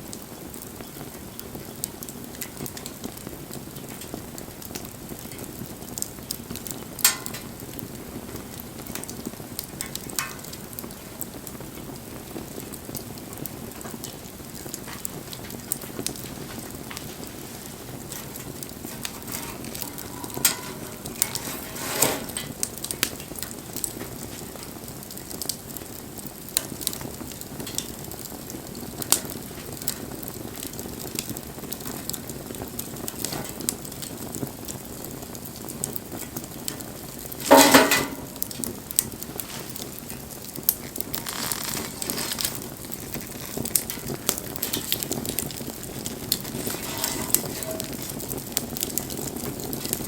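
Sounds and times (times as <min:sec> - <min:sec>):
campfire crackling: 0:00.0 - 0:50.0
burst of rustling: 0:40.9 - 0:43.3.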